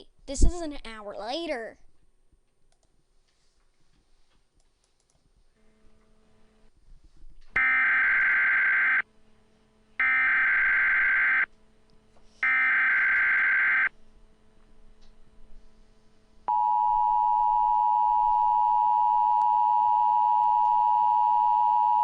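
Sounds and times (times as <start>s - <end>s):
digital data bursts: 10.0s - 11.5s, 12.5s - 13.9s.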